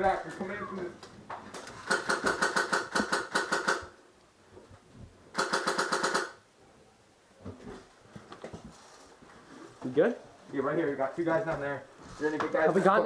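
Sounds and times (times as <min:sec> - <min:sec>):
airsoft rifle full-auto bursts: 0:01.8 - 0:04.0, 0:05.3 - 0:06.4.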